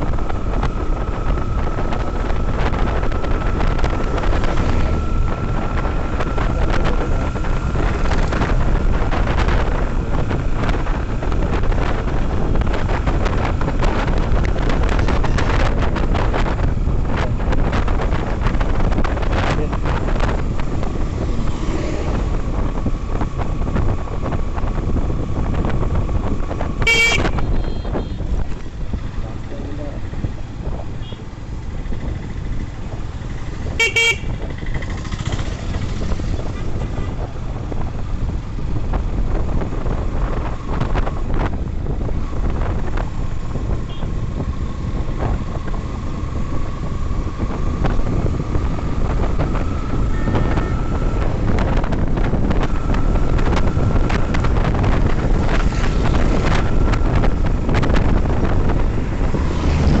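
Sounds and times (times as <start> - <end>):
motorcycle engine and wind rumble: 0.0 - 60.0
vehicle horn honk: 26.8 - 28.3, 33.7 - 34.5, 50.0 - 51.1.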